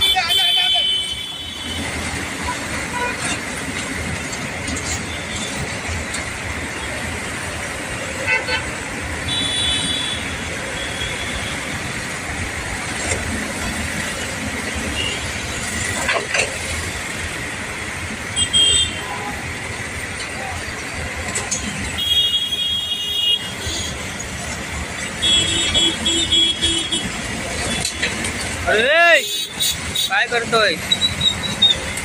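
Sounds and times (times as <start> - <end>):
vehicle horn tooting: 0.0 - 1.9, 2.5 - 3.4, 8.2 - 11.7, 18.4 - 19.3, 25.2 - 27.1, 29.1 - 30.2
road traffic noise: 0.0 - 32.0.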